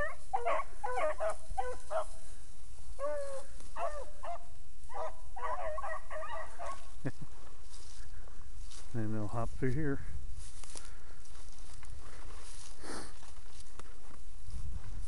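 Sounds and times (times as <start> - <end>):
hounds baying: 0.0 - 2.3, 2.9 - 7.0.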